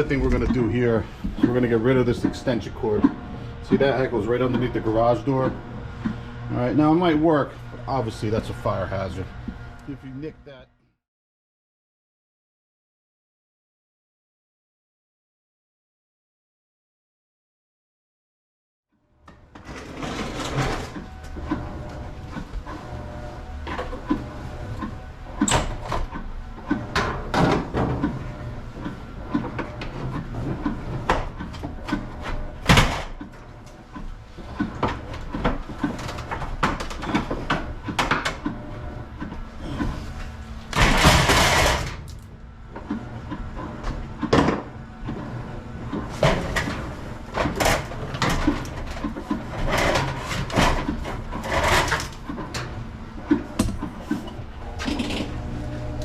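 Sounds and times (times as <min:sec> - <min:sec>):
knocks and clicks of wiring work: 0:19.2 - 0:45.2, 0:45.9 - 0:56.0.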